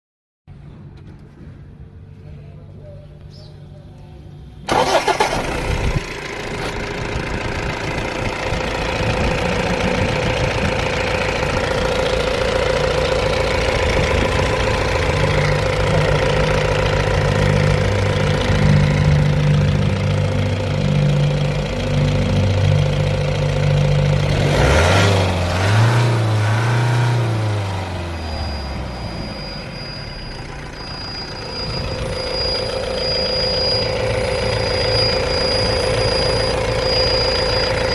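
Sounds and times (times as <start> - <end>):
engine starting and running: 4.4 - 37.9
high-pitched electronic beep: 12.8 - 25.9, 27.3 - 37.9.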